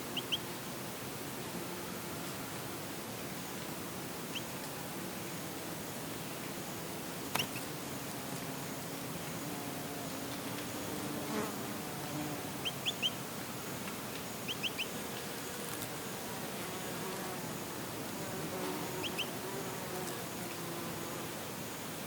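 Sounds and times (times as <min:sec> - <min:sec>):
small bird chirping: 0:00.0 - 0:00.4, 0:04.3 - 0:04.5, 0:07.3 - 0:07.7, 0:12.6 - 0:13.2, 0:14.4 - 0:14.9, 0:19.0 - 0:19.3
bees buzzing: 0:07.0 - 0:21.3.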